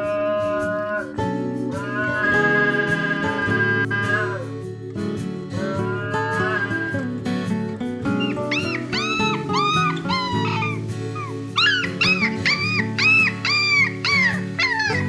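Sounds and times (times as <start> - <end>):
background music: 0.0 - 15.0
dog yelping: 8.2 - 15.0.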